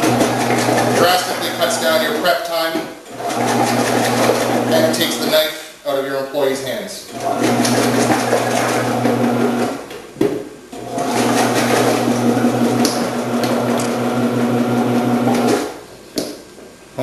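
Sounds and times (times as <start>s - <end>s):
vegetable processor motor humming: 0.0s - 2.2s, 3.1s - 5.3s, 7.1s - 9.9s, 10.8s - 15.8s.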